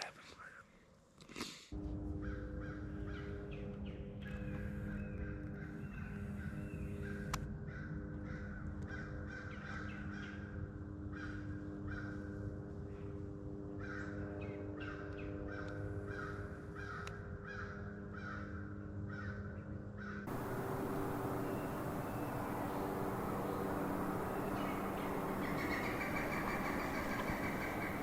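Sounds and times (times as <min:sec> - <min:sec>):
crows cawing: 0:06.4 - 0:10.2, 0:11.2 - 0:12.3, 0:13.8 - 0:14.4, 0:15.5 - 0:19.4, 0:20.0 - 0:28.0
faint steady hum: 0:20.3 - 0:28.0.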